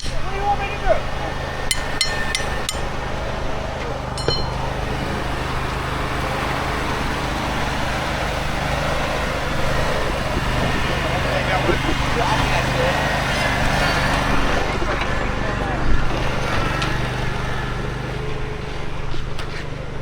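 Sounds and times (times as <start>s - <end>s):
sharp metallic clinks: 0.0s - 8.1s
engine running steadily: 0.0s - 20.0s.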